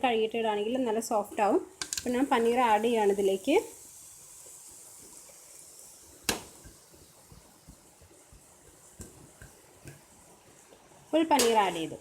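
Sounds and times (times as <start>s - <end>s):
faint steady sizzle: 0.0s - 12.0s.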